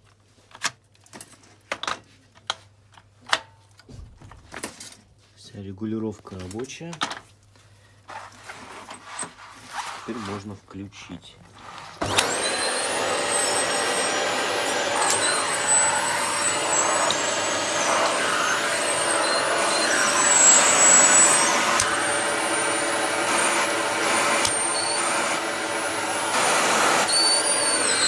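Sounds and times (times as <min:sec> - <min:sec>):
vacuum cleaner running: 0:11.7 - 0:28.0.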